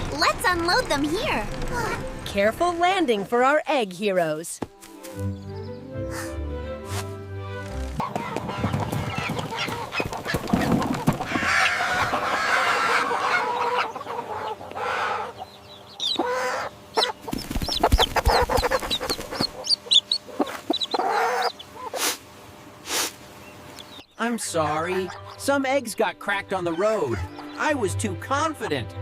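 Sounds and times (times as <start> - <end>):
chickens clucking: 7.9 - 27.8.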